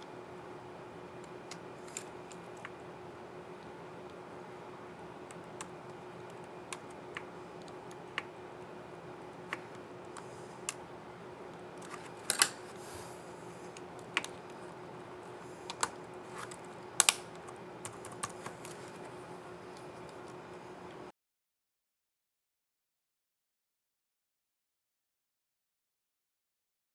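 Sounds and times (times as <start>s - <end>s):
faint steady hum: 0.0s - 21.1s.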